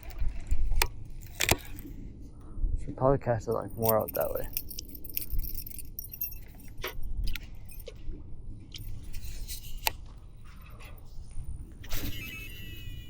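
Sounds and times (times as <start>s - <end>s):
light metallic jingling: 3.4s - 8.0s, 8.8s - 10.6s.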